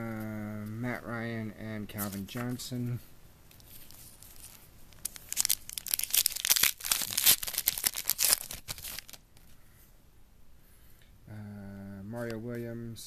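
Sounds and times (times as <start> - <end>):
foil wrapper tearing and crinkling: 3.8 - 9.2.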